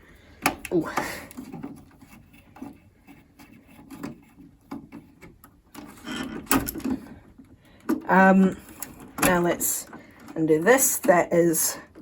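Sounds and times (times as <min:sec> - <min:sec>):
handling noises: 0:00.0 - 0:10.4
screwdriver scraping and clicking: 0:00.4 - 0:07.0.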